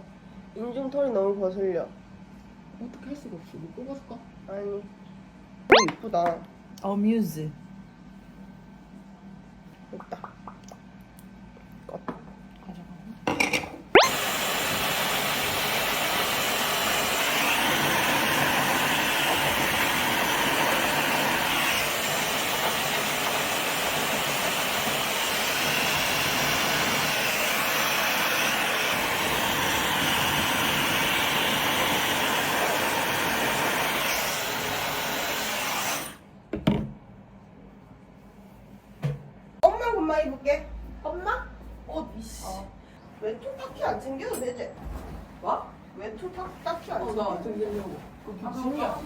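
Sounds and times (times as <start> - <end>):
small motor appliance running: 14.0 - 36.2.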